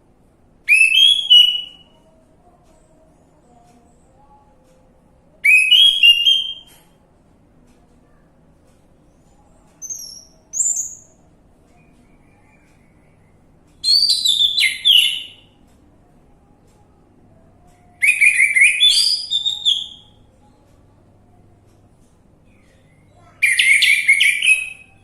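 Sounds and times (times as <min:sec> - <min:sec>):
thrush singing whistled phrases: 0:00.7 - 0:02.0, 0:05.4 - 0:06.7, 0:13.8 - 0:15.5, 0:18.0 - 0:20.2, 0:23.4 - 0:25.0.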